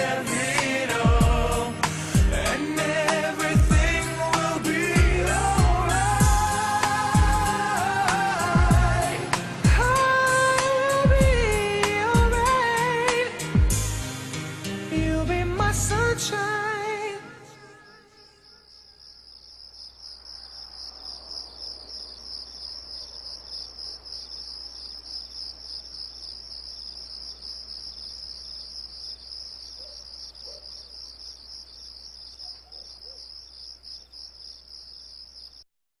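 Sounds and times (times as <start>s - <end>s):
crickets chirping: 0.0s - 13.2s, 16.3s - 35.7s
lower chirps: 17.5s - 35.6s.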